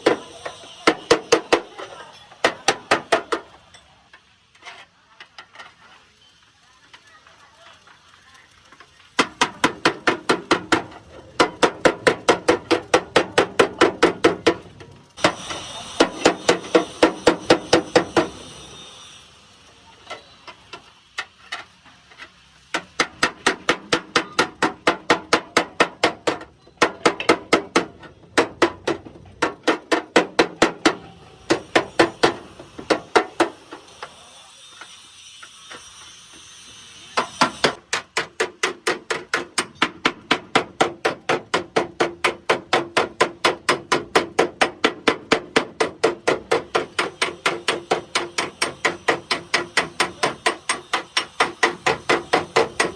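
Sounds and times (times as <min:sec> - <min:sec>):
hammer beating metal: 0:00.0 - 0:03.5, 0:15.2 - 0:18.9, 0:22.8 - 0:34.2, 0:37.2 - 0:52.9.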